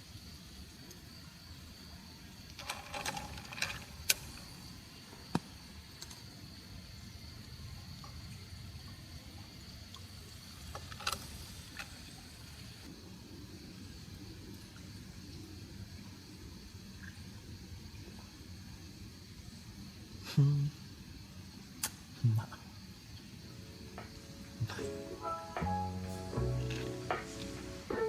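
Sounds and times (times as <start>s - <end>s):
clicks and clatters: 2.5s - 4.4s, 10.7s - 12.0s.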